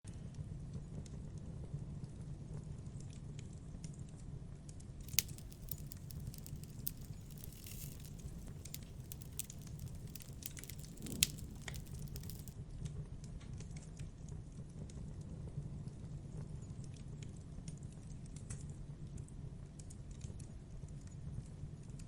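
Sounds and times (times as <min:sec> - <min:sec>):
sharp pops: 0:05.1 - 0:12.5
wood fire crackling: 0:05.1 - 0:12.6.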